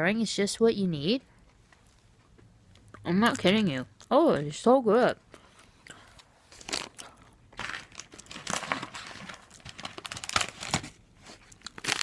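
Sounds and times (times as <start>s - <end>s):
plastic snack pouch crinkling: 6.6s - 12.0s.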